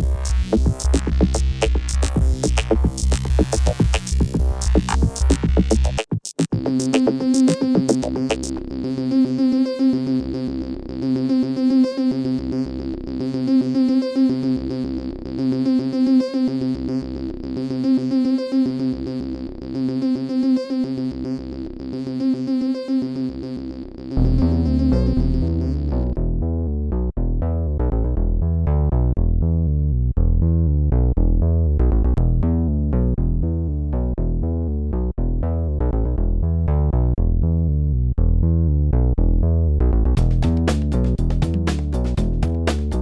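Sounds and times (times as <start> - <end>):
electronic synthesizer music: 0.0 - 26.3.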